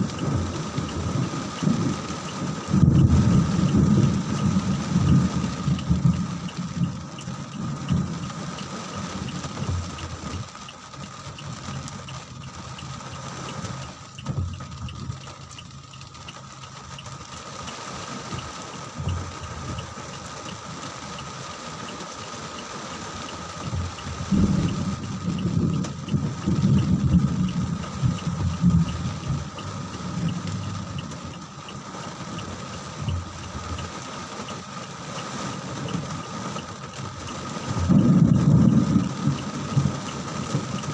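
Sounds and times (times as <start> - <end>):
rain falling steadily: 0.0 - 40.9
low rumbles: 23.5 - 34.1, 37.0 - 40.9.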